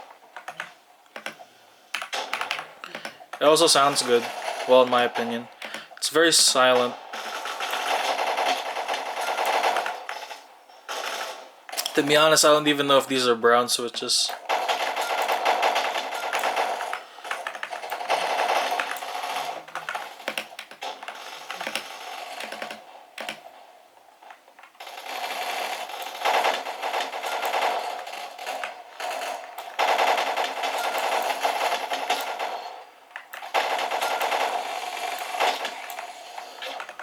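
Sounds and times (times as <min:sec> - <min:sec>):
automatic gunfire: 0:06.7 - 0:11.5, 0:14.4 - 0:20.2, 0:24.8 - 0:36.8.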